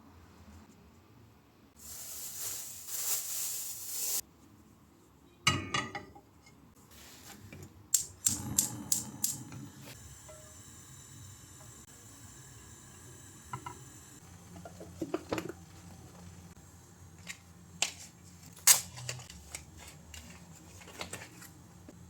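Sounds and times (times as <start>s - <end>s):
rustling: 1.8s - 4.2s.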